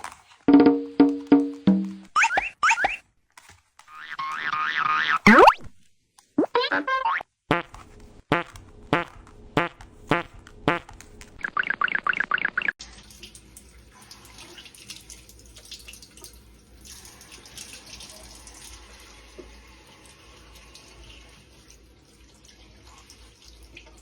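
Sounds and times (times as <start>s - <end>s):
water running: 11.4s - 24.0s
faint ticks and drips: 12.8s - 24.0s.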